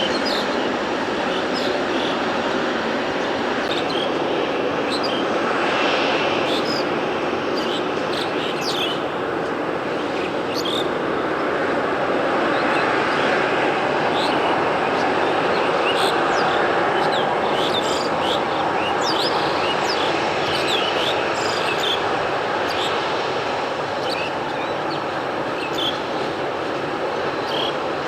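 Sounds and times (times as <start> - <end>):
birds chirping: 0.0 - 5.6, 6.4 - 11.5, 14.0 - 23.0, 24.0 - 26.3, 27.2 - 27.8
jet engines roaring: 0.0 - 28.0.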